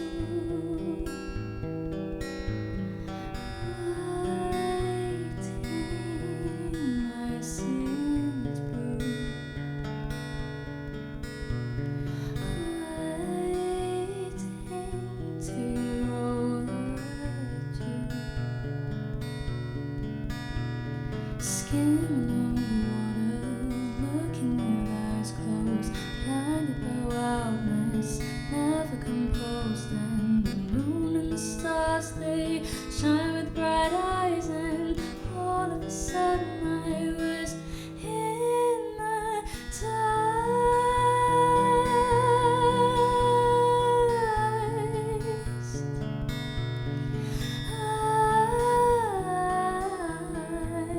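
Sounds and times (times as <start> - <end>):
person singing: 0.0 - 1.4, 21.5 - 45.8, 47.6 - 50.9
acoustic guitar: 0.0 - 50.9.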